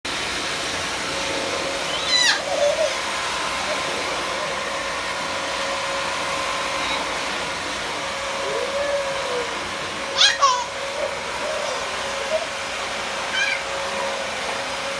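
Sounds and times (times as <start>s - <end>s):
vacuum cleaner running: 0.1s - 14.9s
baby squealing: 1.9s - 3.0s, 10.1s - 12.5s, 13.3s - 13.8s
baby babbling: 1.9s - 3.1s, 8.4s - 12.6s, 13.3s - 13.8s.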